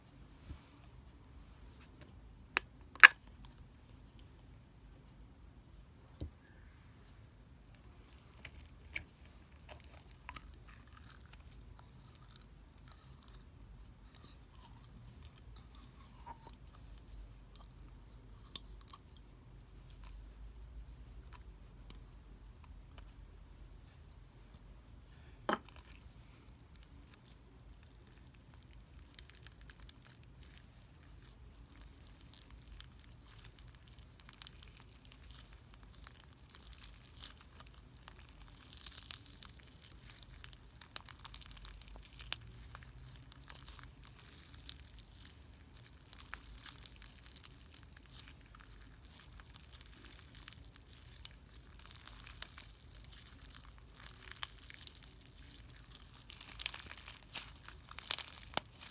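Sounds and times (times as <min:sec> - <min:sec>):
slime crackling and popping: 0:02.9 - 0:03.3, 0:07.7 - 0:13.4, 0:26.7 - 0:58.9.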